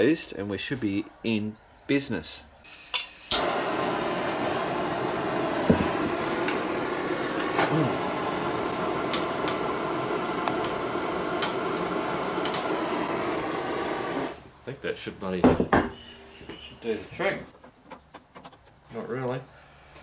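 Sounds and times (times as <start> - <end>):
blowtorch roaring: 2.7 - 14.6.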